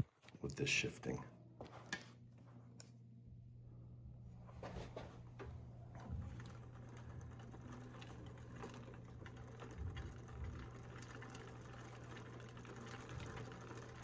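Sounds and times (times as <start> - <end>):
low steady hum: 0.0 - 14.0
bicycle chain ticking over gears: 6.4 - 14.0.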